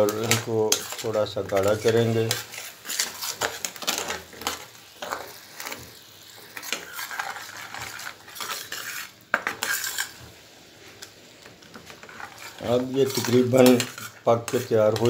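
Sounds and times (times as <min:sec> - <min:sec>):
utensil scraping a pan: 0:00.0 - 0:15.0.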